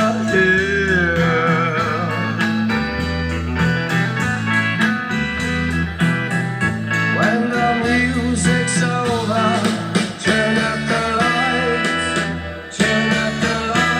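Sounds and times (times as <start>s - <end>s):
guitar-led song with beat: 0.0s - 13.9s
sliding melody line: 0.0s - 13.9s.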